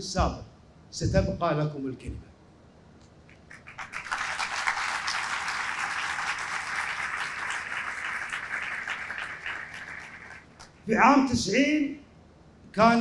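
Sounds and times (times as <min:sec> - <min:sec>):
audience applauding: 0:03.3 - 0:10.8.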